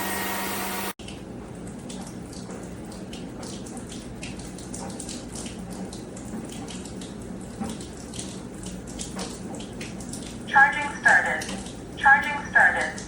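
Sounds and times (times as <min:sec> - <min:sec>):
water running and splashing: 0:01.7 - 0:12.0.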